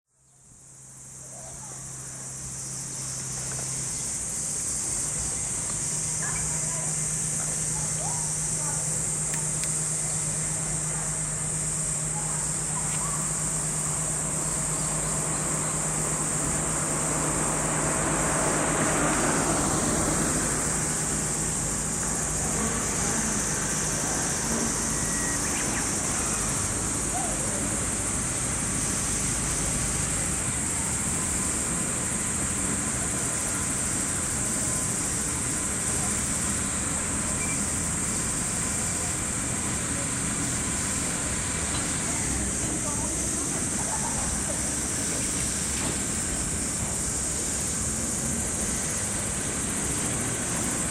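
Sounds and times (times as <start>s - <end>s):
cicadas chorus: 0.1s - 50.9s
low engine hum: 0.3s - 50.9s
vehicle passing: 16.7s - 25.4s.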